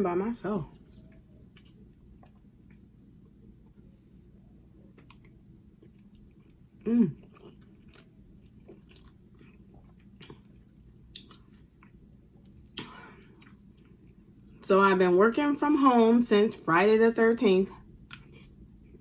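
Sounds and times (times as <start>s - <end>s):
person chewing food: 0.7s - 3.9s, 4.6s - 14.6s, 17.8s - 19.0s.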